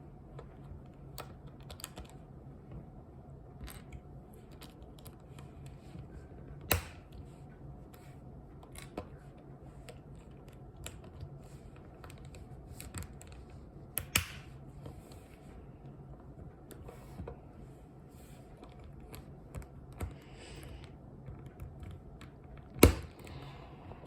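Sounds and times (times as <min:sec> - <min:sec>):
low steady hum: 0:00.0 - 0:24.0
sharp plastic snaps: 0:06.6 - 0:07.2, 0:14.0 - 0:14.6, 0:21.4 - 0:23.3.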